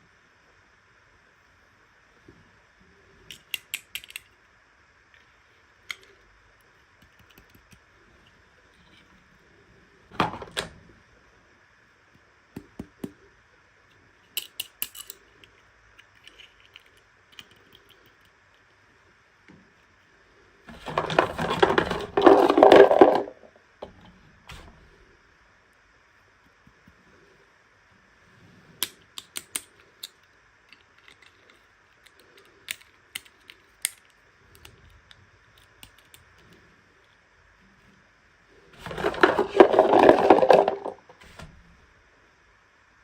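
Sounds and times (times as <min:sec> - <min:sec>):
plastic pieces clicking and tapping: 0:03.3 - 0:04.4, 0:07.0 - 0:07.8, 0:14.3 - 0:18.4, 0:20.7 - 0:23.5, 0:28.8 - 0:34.8, 0:35.6 - 0:36.3, 0:38.8 - 0:41.1.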